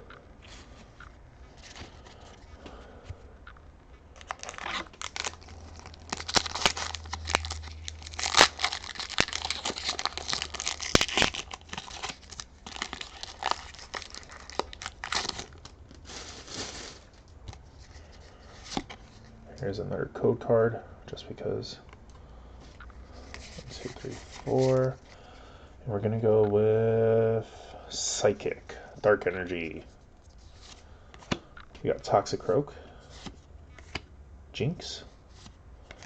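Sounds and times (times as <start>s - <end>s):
foil wrapper tearing and crinkling: 4.2s - 17.2s.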